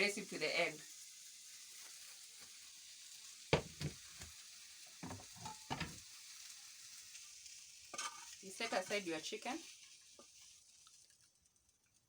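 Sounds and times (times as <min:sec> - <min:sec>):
faint hiss: 0:00.0 - 0:10.7
kitchen utensils clattering: 0:03.6 - 0:04.3, 0:05.0 - 0:06.0.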